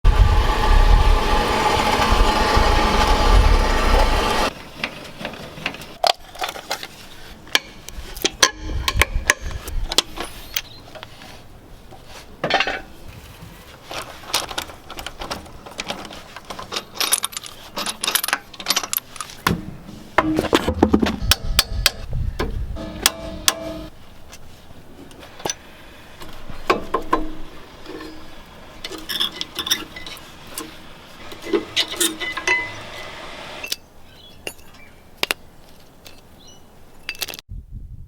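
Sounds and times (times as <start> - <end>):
loud steady mechanical noise: 0.1 - 4.5, 32.4 - 33.7.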